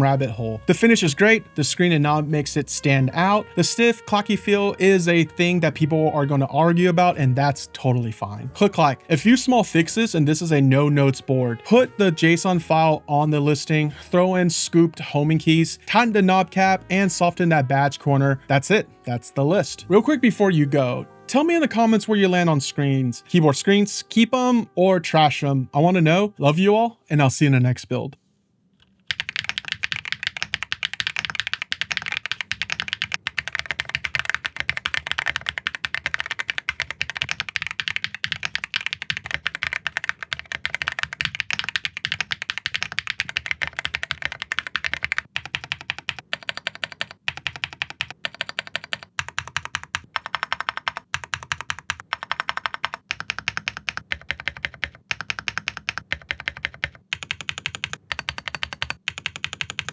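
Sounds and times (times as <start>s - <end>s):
fast mechanical keyboard typing: 28.8s - 59.9s.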